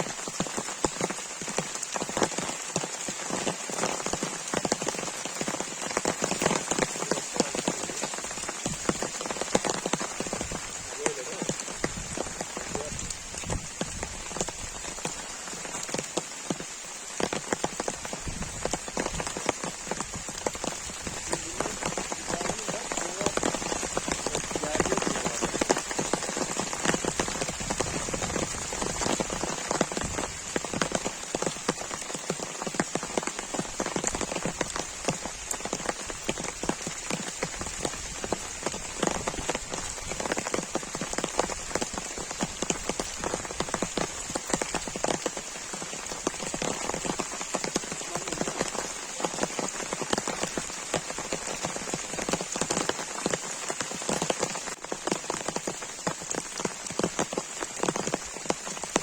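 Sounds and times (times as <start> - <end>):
heavy rain pattering: 0.0 - 59.0.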